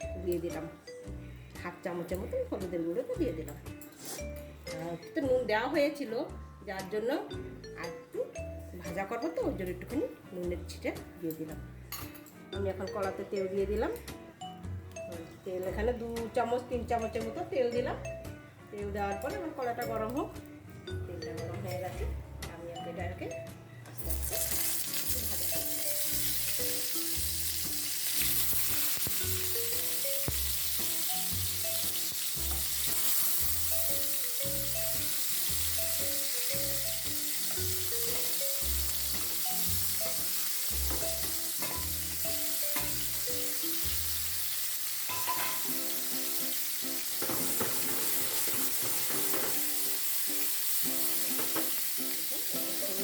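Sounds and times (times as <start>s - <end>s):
background music: 0.0s - 53.0s
vegetables sizzling in hot oil: 24.0s - 53.0s.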